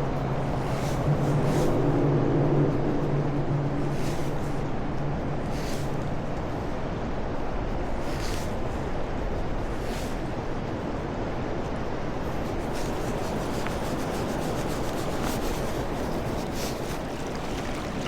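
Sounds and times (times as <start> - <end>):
river water rushing: 12.2 - 18.0.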